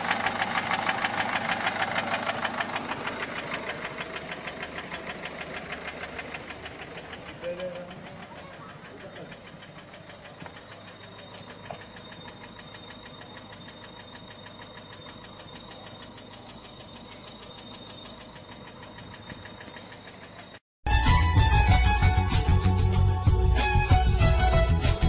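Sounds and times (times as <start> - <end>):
diesel engine idling with ticking knock: 0.0 - 25.0.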